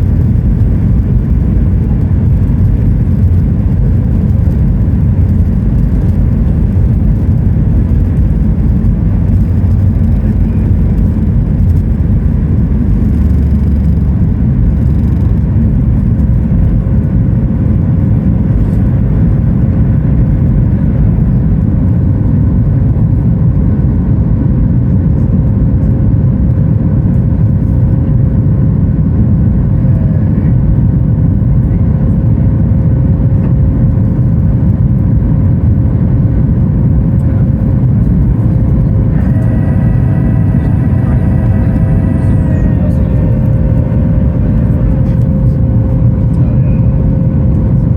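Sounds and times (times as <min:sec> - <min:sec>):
jet engines rumbling: 0:00.0 - 0:47.9
steady tone: 0:37.4 - 0:47.9.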